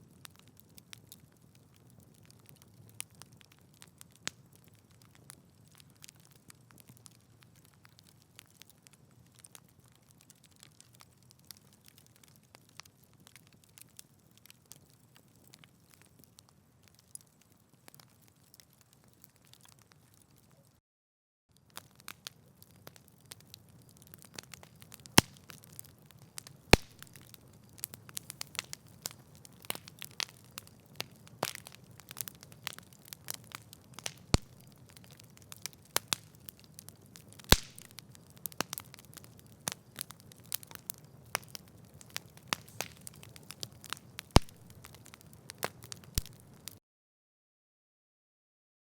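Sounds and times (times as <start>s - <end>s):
sharp cracks of burning wood: 0.0s - 20.6s, 21.5s - 46.8s
campfire crackling: 0.0s - 20.7s, 21.6s - 46.8s
low hiss of flames: 26.7s - 30.3s, 37.5s - 45.0s.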